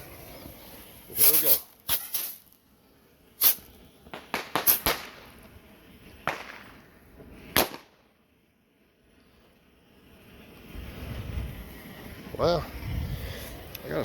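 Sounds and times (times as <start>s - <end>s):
bottle rockets popping: 1.1s - 2.6s, 3.4s - 5.4s, 6.2s - 6.9s, 7.5s - 8.1s.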